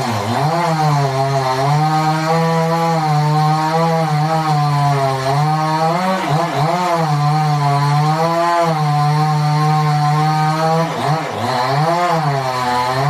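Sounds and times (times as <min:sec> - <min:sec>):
chainsaw cutting wood: 0:00.0 - 0:13.0.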